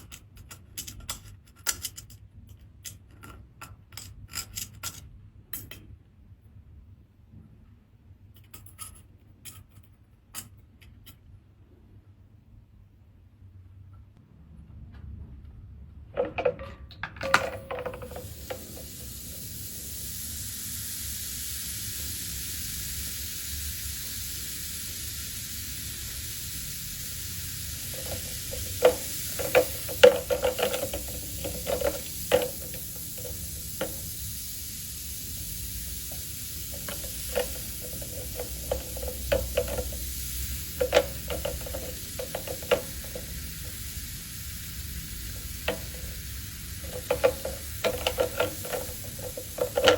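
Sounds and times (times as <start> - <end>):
acid fizzing: 17.2 - 49.9.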